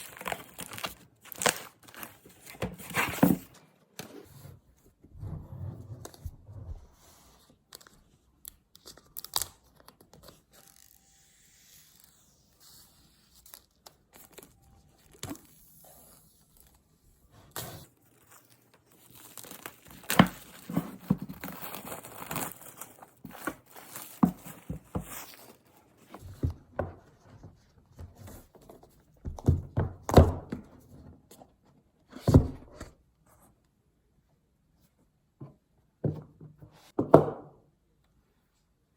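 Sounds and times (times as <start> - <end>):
packaging tearing and crinkling: 0.0 - 3.3, 18.0 - 25.7.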